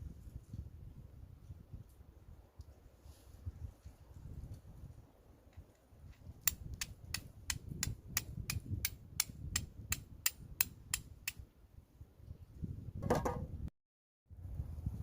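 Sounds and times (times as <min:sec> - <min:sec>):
steel striker scraping flint: 0:06.2 - 0:11.4.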